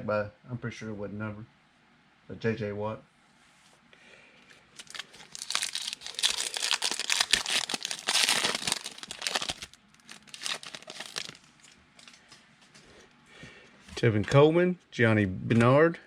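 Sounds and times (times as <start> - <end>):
foil wrapper tearing and crinkling: 4.8 - 11.5.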